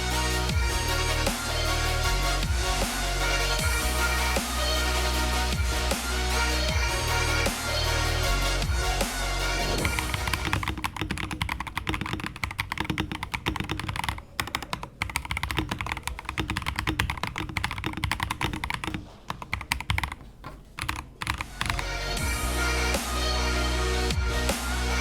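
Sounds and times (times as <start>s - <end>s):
mechanical keyboard typing: 10.3s - 21.8s.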